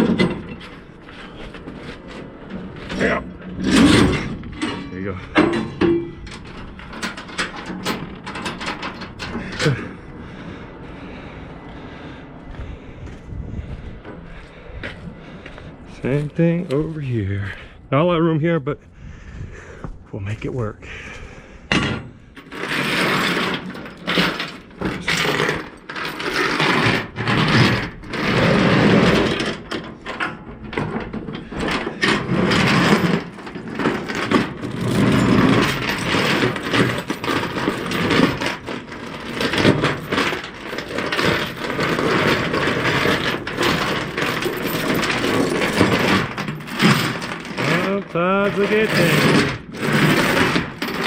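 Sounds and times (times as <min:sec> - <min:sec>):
chain rattling and clanking: 0:00.0 - 0:10.1, 0:21.7 - 0:51.0.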